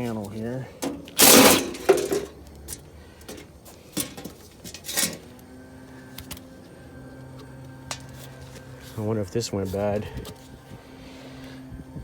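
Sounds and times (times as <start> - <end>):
metal panel scraping rattle: 0.8 - 2.3, 4.0 - 5.2
metallic clanks and knocks: 0.8 - 2.3, 3.3 - 5.3.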